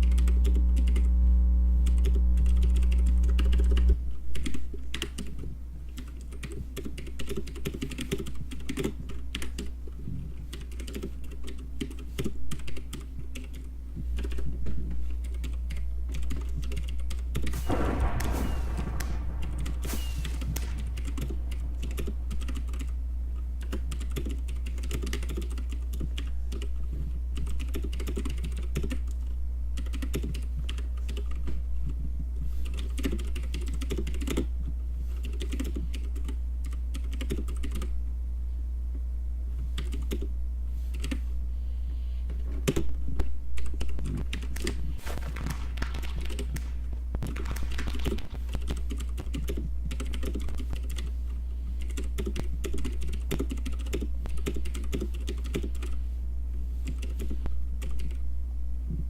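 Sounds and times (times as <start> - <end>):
typing on keyboard: 0.0 - 1.1, 1.8 - 5.4, 6.0 - 9.7, 10.5 - 14.5, 15.2 - 17.5, 21.0 - 22.9, 23.6 - 26.8, 27.4 - 29.2, 29.8 - 31.4, 32.6 - 34.5, 35.2 - 37.9, 39.8 - 40.3, 40.9 - 41.2, 45.4 - 46.7, 47.3 - 51.1, 51.8 - 56.0, 56.8 - 58.2
low hum: 0.0 - 7.3, 13.6 - 27.4.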